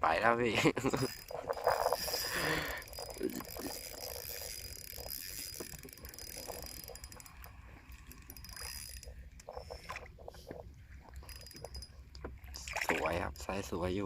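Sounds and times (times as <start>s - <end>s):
fishing reel ratcheting: 0.8s - 10.0s, 11.2s - 12.7s.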